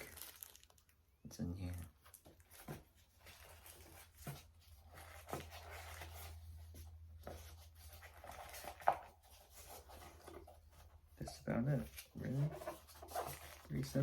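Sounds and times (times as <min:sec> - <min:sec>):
packaging rustling: 0:00.0 - 0:01.0.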